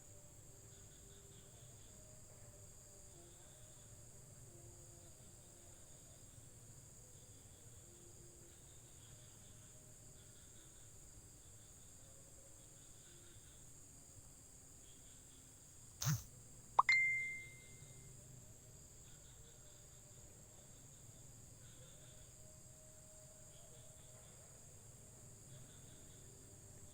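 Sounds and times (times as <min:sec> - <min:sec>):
insect chorus chirring: 0:16.0 - 0:16.2.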